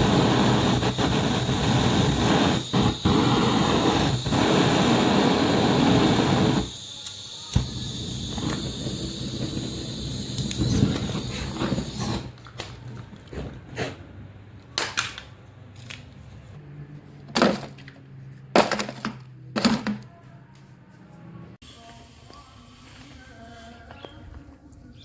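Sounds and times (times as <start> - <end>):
power tool whining: 0.0 - 12.3.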